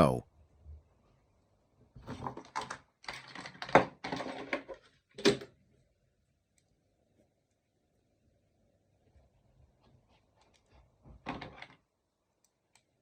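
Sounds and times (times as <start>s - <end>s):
clicking and scraping handling noises: 2.1s - 5.4s.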